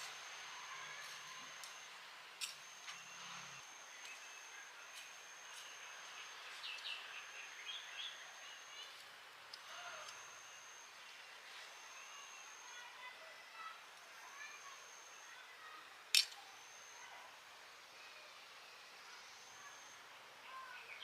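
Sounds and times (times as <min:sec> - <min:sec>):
steady high-pitched tone: 0:00.0 - 0:09.0, 0:09.7 - 0:15.4
sharp click: 0:16.1 - 0:16.4.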